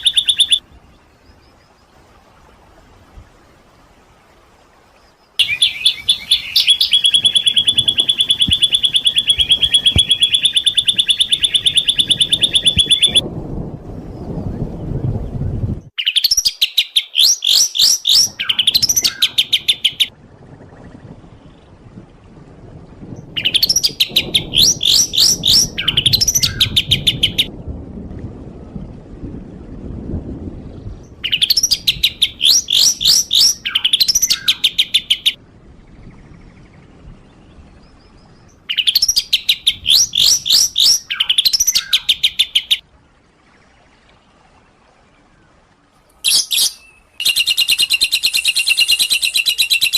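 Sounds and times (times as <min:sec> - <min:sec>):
songbird rapid chirping: 0:00.0 - 0:02.0, 0:05.0 - 0:13.2, 0:15.9 - 0:20.2, 0:23.3 - 0:27.5, 0:31.2 - 0:42.8, 0:43.5 - 0:49.9.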